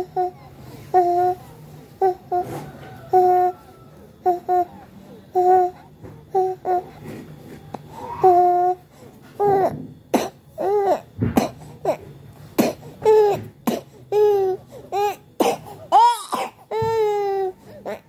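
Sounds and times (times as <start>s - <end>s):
child coughing: 10.1s - 10.4s, 11.2s - 14.0s, 15.4s - 16.9s.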